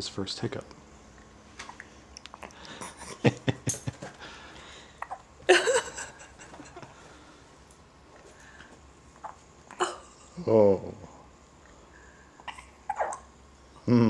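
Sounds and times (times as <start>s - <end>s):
baby hiccupping: 5.0s - 5.7s, 9.2s - 10.1s, 12.4s - 13.3s.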